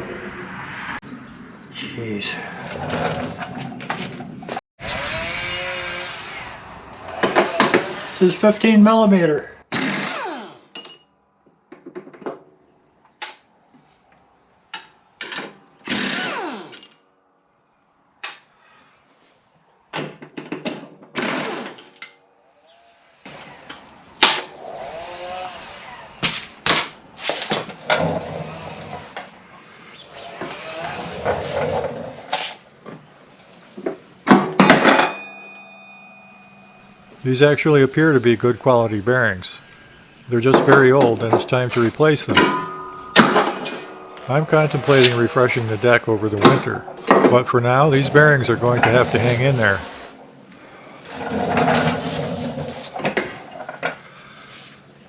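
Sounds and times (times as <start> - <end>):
struck metal ringing: 39.2 - 47.3
metal clanks clattering: 42.4 - 44.3.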